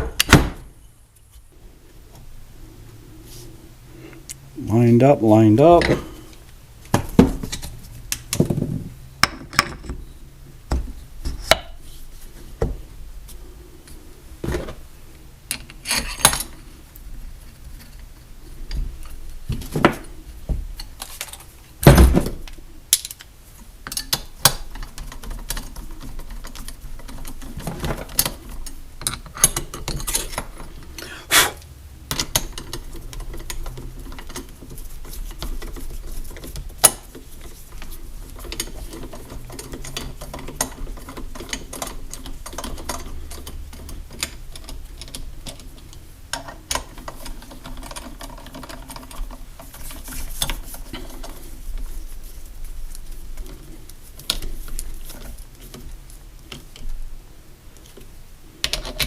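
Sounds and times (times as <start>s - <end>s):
metal parts clinking and knocking: 15.5s - 16.6s, 23.8s - 31.0s.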